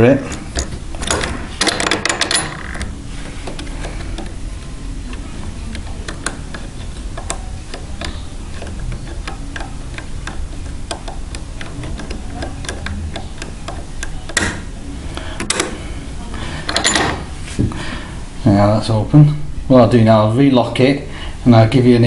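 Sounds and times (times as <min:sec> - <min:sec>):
padlock clattering: 0:00.3 - 0:04.4, 0:05.1 - 0:14.7, 0:16.7 - 0:17.3.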